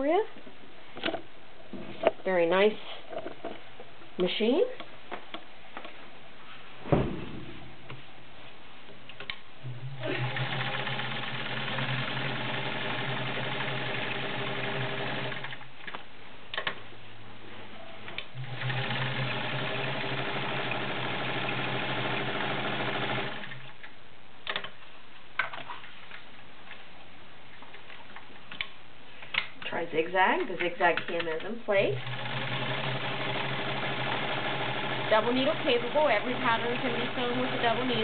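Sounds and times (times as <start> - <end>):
sewing machine running: 9.8 - 15.6, 18.4 - 23.7, 31.9 - 38.0.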